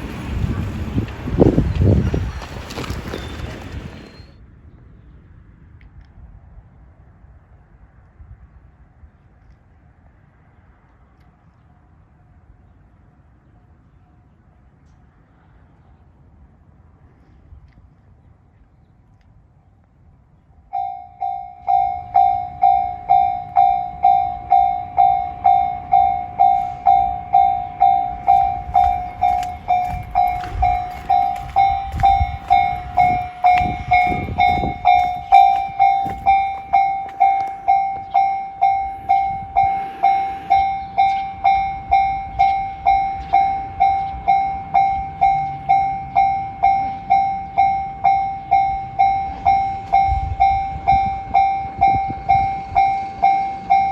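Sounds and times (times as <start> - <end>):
level crossing alarm pulsing: 20.7 - 53.9
low rumble: 20.9 - 44.5.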